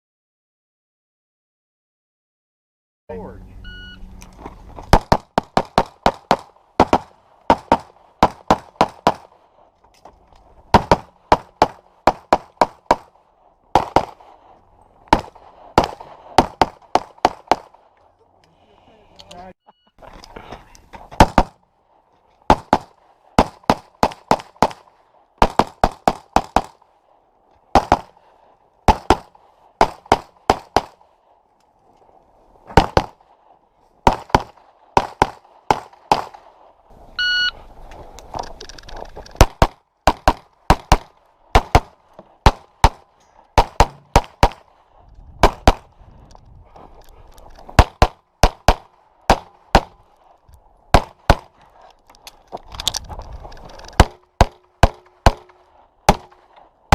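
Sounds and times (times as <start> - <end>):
rapid pistol fire: 4.9 - 9.4, 10.7 - 13.1, 13.7 - 14.3, 15.1 - 17.8, 21.2 - 21.6, 22.5 - 26.8, 27.7 - 28.2, 28.9 - 31.0, 32.8 - 33.2, 34.0 - 36.5, 39.4 - 44.7, 45.4 - 45.9, 47.8 - 50.0, 50.9 - 51.6
electronic shot timer beep: 37.2 - 37.6.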